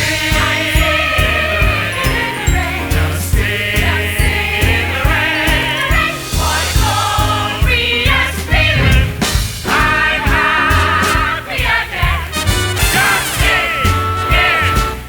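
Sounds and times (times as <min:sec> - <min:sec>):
band accompaniment with bass beat: 0:00.0 - 0:15.0
voices singing together: 0:00.0 - 0:15.0.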